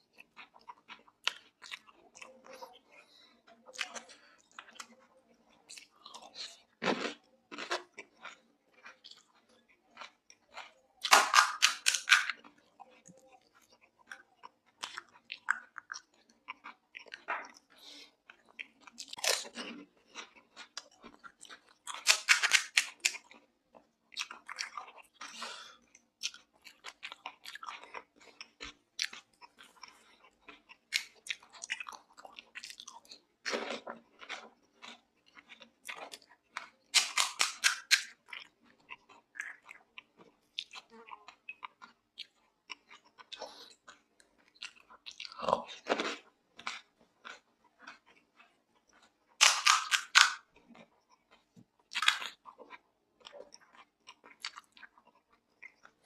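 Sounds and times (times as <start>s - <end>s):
wet chewing: 0.0s - 56.0s
loud crunching of crisp shells: 10.0s - 12.5s, 19.0s - 23.4s, 26.3s - 39.7s, 49.4s - 50.6s, 51.9s - 52.6s.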